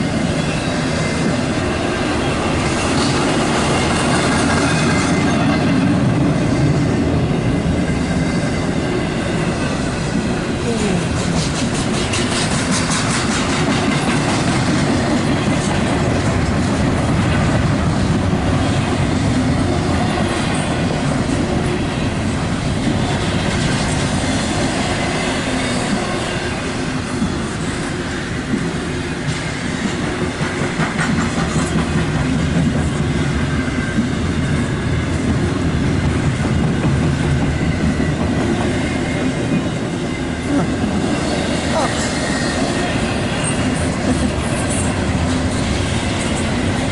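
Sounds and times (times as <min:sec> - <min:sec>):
freight train cars rumbling: 0:00.0 - 0:46.9
wheels clacking over rail joints: 0:00.3 - 0:08.1, 0:28.5 - 0:40.1.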